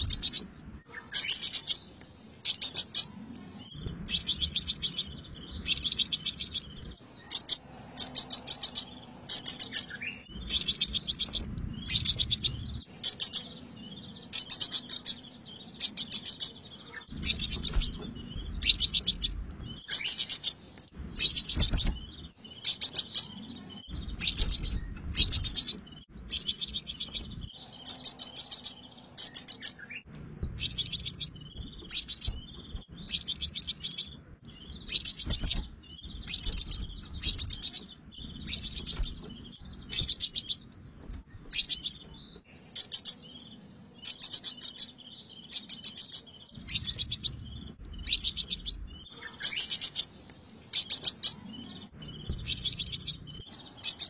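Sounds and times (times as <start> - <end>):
low background rumble: 0.0 - 1.0, 3.1 - 14.3, 17.0 - 20.0, 20.6 - 42.4, 46.5 - 49.2, 51.8 - 54.0
bird high-pitched trilled chirps: 0.0 - 1.9, 2.5 - 54.0.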